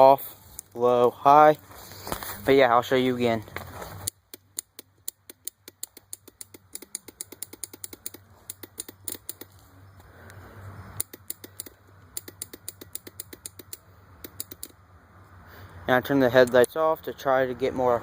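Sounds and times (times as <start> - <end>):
starter relay clicking rapidly: 4.3 - 9.5, 11.0 - 14.7.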